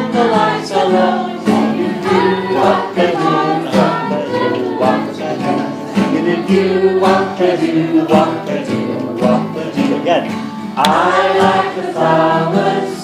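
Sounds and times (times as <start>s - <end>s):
group singing: 0.0s - 13.0s
strummed guitar: 0.0s - 13.0s.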